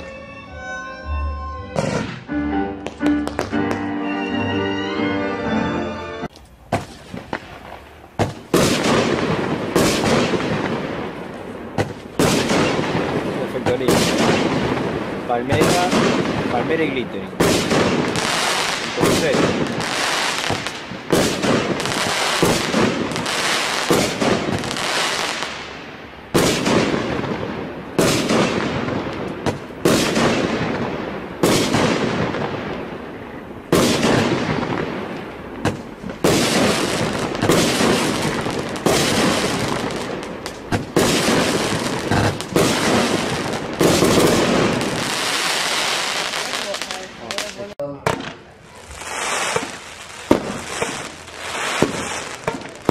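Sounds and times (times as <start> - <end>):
crackle of glitter fireworks: 1.0 - 4.0, 6.3 - 52.9
fireworks shells bursting: 6.3 - 25.6, 33.7 - 52.9.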